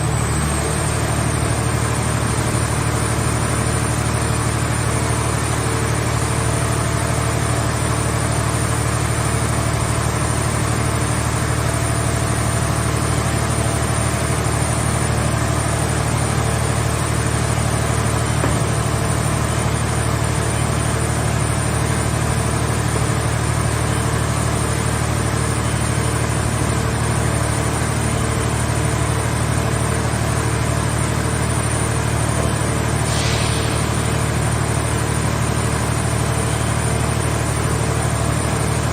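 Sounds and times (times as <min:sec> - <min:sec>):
hydraulic power unit humming: 0:00.0 - 0:38.9
brief hiss: 0:33.0 - 0:34.4.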